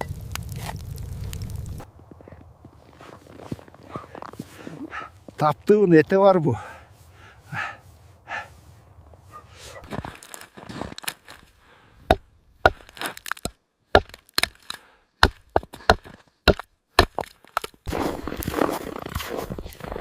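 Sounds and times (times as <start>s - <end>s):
sharp chopping knocks: 12.1s - 14.6s, 15.2s - 17.3s.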